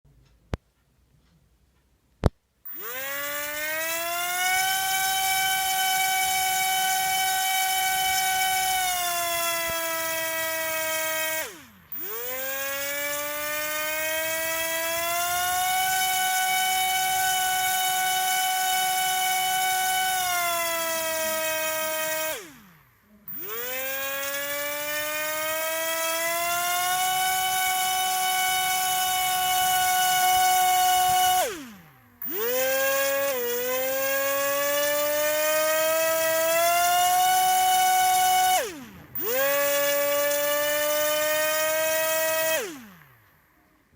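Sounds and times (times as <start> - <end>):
drone motors whining: 2.7 - 43.9.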